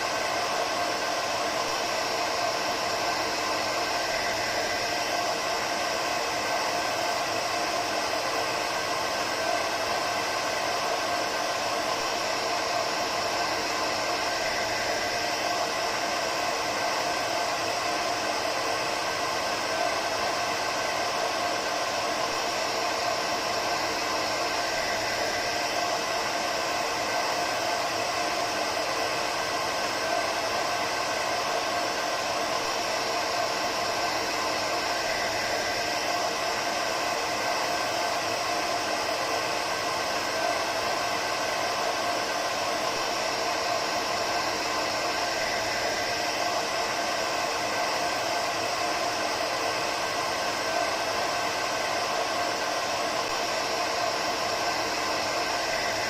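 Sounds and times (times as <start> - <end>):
hair dryer running: 0.0 - 56.0.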